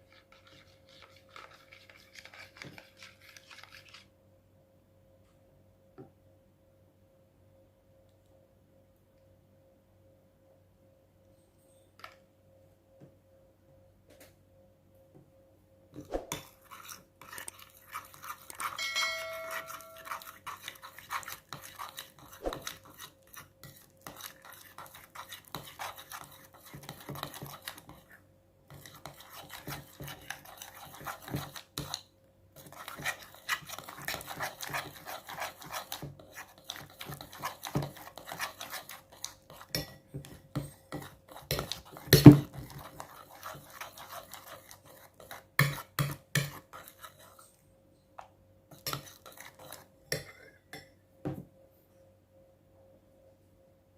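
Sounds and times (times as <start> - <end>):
utensil scraping a bowl: 0.0 - 4.1, 16.0 - 32.0, 32.6 - 47.6, 48.7 - 50.2
short ringing tone: 18.8 - 20.0.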